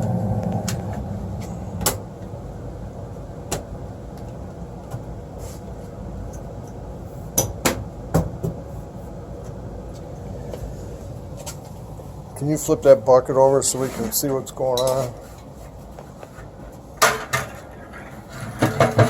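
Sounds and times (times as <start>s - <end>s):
furnace humming: 0.0s - 19.0s
sharp knocks and clatters: 18.6s - 19.0s.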